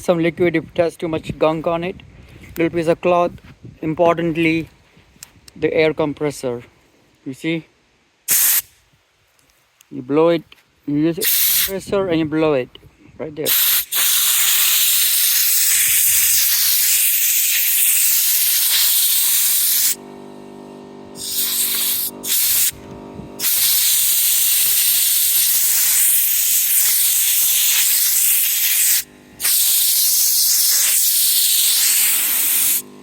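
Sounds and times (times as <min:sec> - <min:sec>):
compressed air blasting: 0:08.3 - 0:08.8, 0:11.2 - 0:11.8, 0:13.4 - 0:33.0
steady hum: 0:13.7 - 0:33.0.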